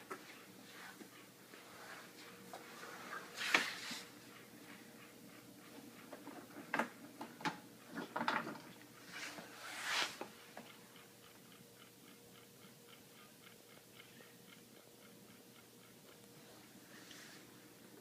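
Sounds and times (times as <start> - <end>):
faint even ticking: 10.4 - 18.0.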